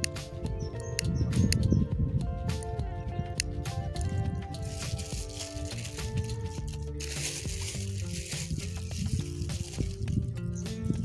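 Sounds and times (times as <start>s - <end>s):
light percussive clicks: 0.0s - 1.8s
music with held notes: 0.0s - 11.0s.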